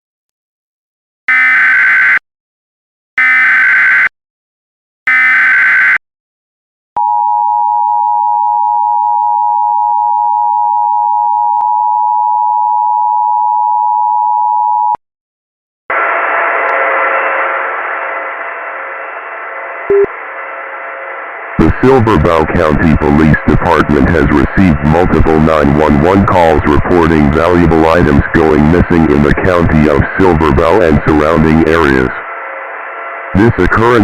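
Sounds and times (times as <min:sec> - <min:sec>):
hissing static with faint tones: 0:16.0 - 0:34.0
data tone bursts: 0:19.9 - 0:20.1
two-tone attention signal: 0:19.9 - 0:20.1.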